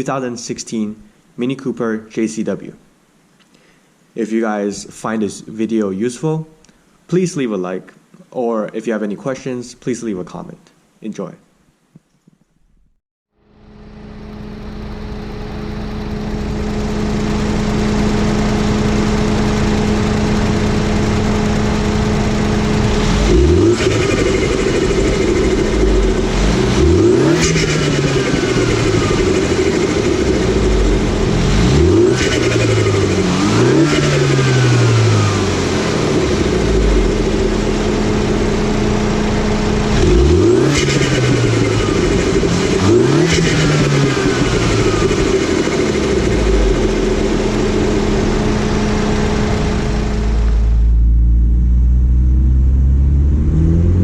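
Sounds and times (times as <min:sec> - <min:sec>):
car engine idling and revving: 0:13.6 - 0:54.0.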